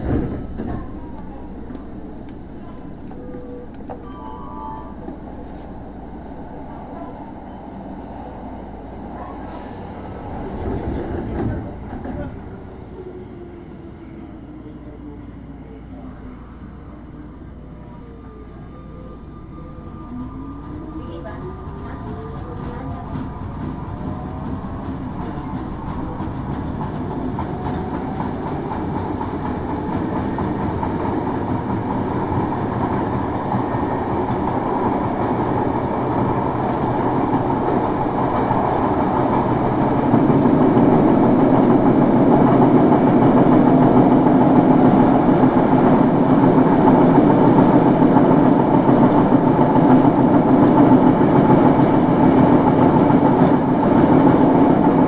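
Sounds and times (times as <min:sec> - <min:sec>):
subway car running: 0:00.0 - 0:55.0
rail clatter: 0:09.5 - 0:12.9.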